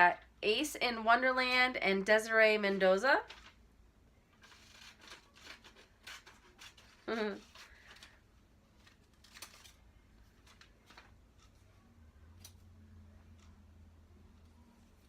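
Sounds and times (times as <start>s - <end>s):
paper rustling: 3.2s - 3.6s, 4.3s - 11.9s
scissors snipping paper: 4.4s - 8.1s
person humming: 7.1s - 7.5s.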